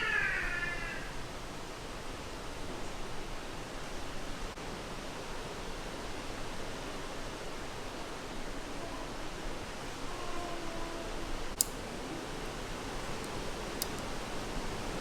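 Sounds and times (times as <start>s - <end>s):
steady hiss: 1.1s - 15.0s
faint click: 11.5s - 11.8s, 13.0s - 14.2s.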